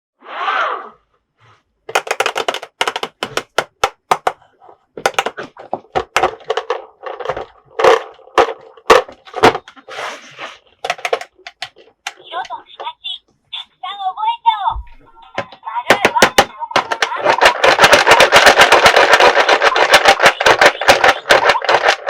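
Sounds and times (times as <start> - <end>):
plastic toy pieces clicking: 1.9 - 4.4, 5.0 - 9.8, 10.8 - 12.9, 15.3 - 22.0.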